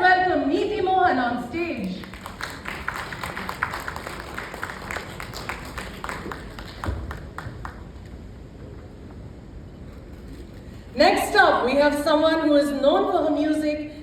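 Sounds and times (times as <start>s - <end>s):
small audience clapping: 1.8s - 8.0s.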